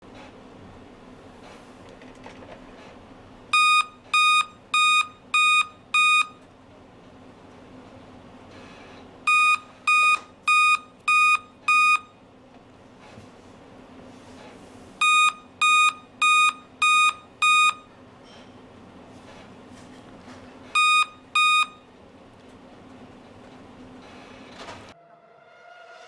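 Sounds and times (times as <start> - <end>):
short computer error beeps: 3.6 - 6.4, 9.3 - 12.1, 15.0 - 17.9, 20.8 - 21.8.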